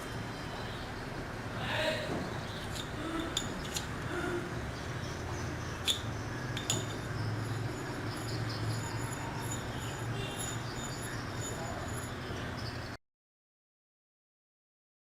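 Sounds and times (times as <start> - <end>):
sharp clicks and knocks: 5.8 - 7.1.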